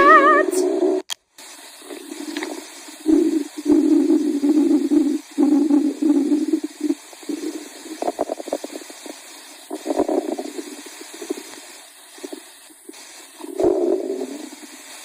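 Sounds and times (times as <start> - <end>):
cat stomach growling: 1.8 - 9.0, 9.7 - 11.5, 13.4 - 14.7.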